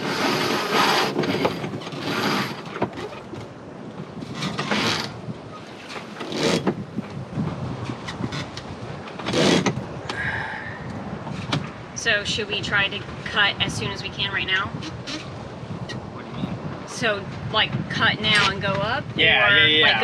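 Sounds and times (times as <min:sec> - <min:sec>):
rope and hardware rushes: 0:00.0 - 0:03.4, 0:04.3 - 0:06.8, 0:08.0 - 0:09.8.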